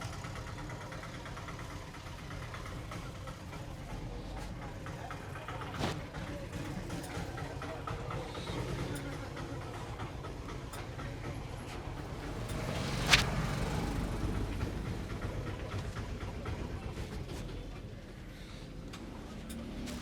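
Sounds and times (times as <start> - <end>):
low engine rumble: 0.0 - 20.0
sharp slap: 12.8 - 13.4.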